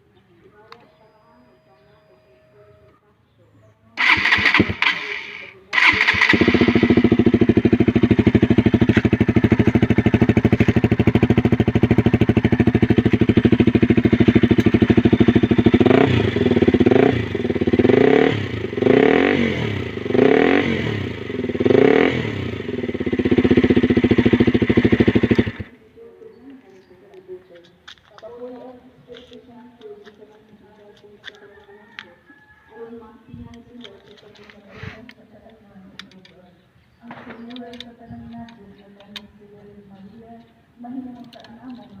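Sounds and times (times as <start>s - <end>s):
motorcycle engine revving: 4.0s - 25.8s.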